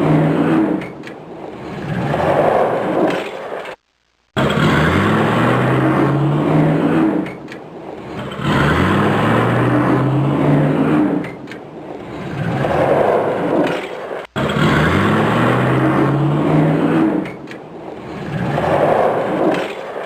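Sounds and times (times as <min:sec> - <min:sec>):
car engine accelerating hard: 0:04.4 - 0:07.4, 0:08.0 - 0:19.6.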